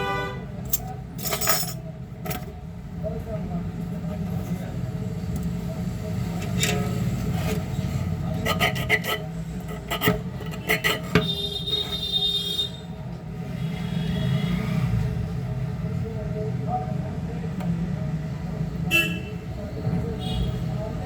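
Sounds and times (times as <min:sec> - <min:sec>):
hand tools scraping plastic: 0:06.4 - 0:12.1.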